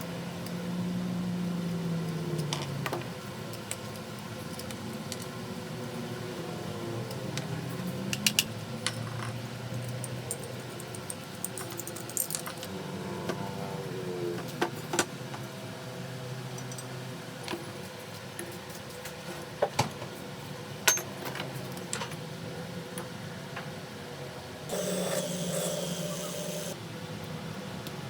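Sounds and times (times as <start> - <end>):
small metal parts clinking: 8.3 - 12.7.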